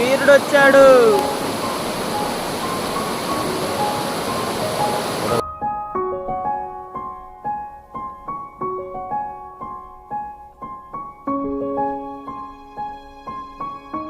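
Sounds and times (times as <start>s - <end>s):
gentle solo piano piece: 0.0s - 14.0s.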